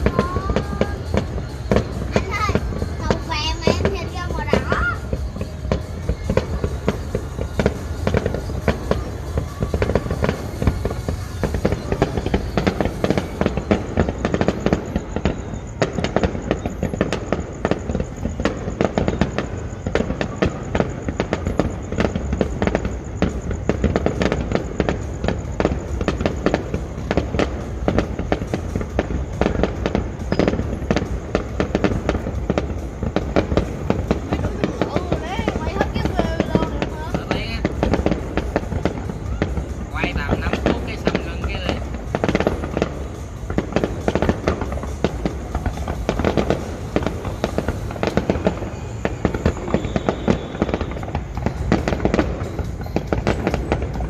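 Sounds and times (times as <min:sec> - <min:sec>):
fireworks bangs and crackles: 0:00.0 - 0:54.0.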